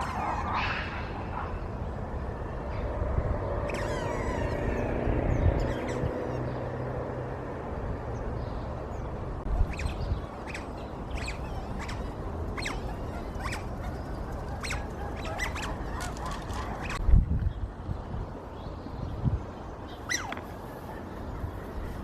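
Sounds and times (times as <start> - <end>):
steady background noise: 0.0 - 22.0
short high bird calls: 20.0 - 21.0.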